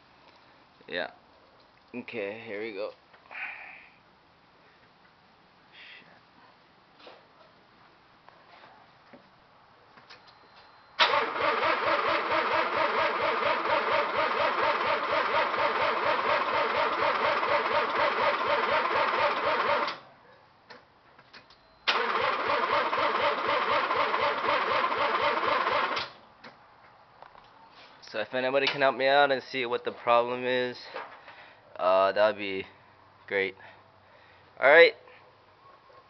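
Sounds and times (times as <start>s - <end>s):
engine cranking on starter motor: 11.0s - 20.0s, 21.9s - 26.2s.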